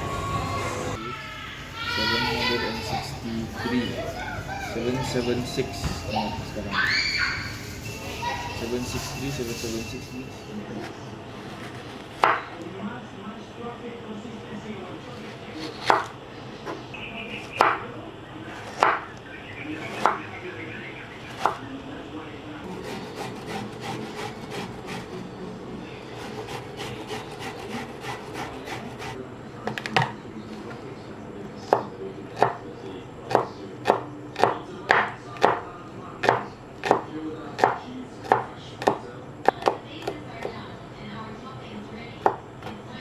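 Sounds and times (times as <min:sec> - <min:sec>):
knife chopping on wooden board: 0:15.2 - 0:16.2, 0:18.6 - 0:19.1, 0:32.4 - 0:32.6, 0:33.3 - 0:35.6, 0:36.2 - 0:40.6.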